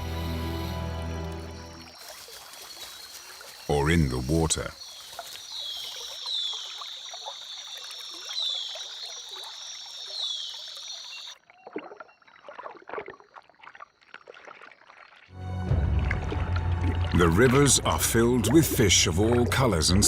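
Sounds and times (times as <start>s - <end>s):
water sloshing and splashing: 1.0s - 20.0s
shrill high-pitched insect chorus: 4.7s - 11.3s.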